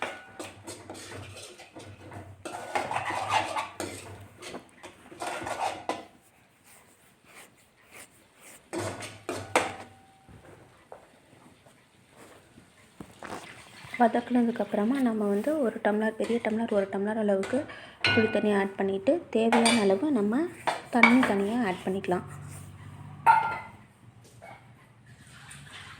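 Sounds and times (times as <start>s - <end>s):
spoon scraping paste in a pan: 0.0s - 10.0s, 13.0s - 23.8s.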